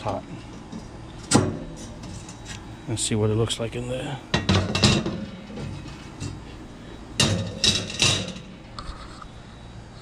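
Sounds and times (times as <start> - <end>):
metal grill grates clanking: 0.0 - 2.6, 4.3 - 8.9.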